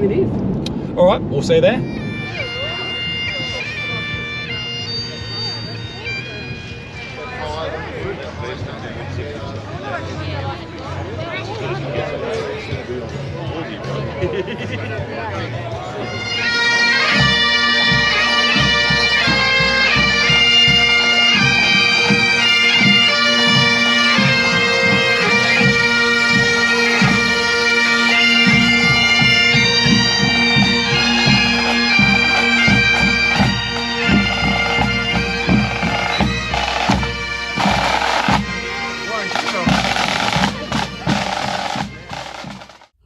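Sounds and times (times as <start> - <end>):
bagpipes playing a tune: 1.8 - 8.6, 15.8 - 43.0
drum beating: 16.3 - 43.0.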